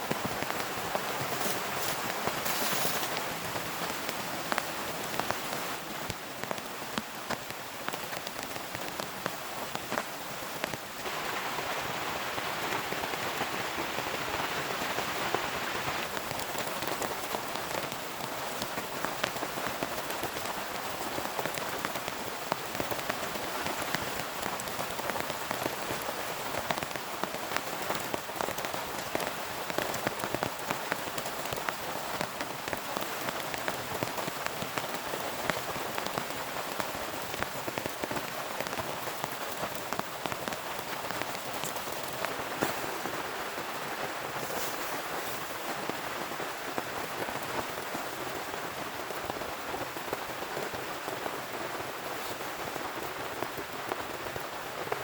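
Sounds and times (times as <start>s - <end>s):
heavy rain falling: 0.0s - 55.0s
raindrop hits: 38.6s - 47.7s.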